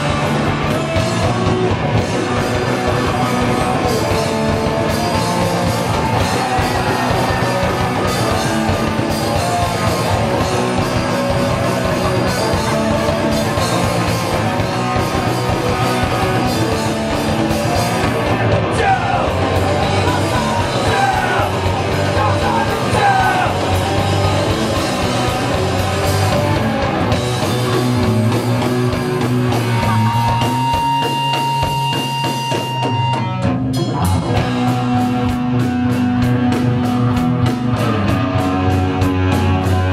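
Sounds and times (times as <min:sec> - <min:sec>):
punk rock band playing: 0:00.0 - 0:39.9
person yelling: 0:18.4 - 0:19.4, 0:20.0 - 0:23.7.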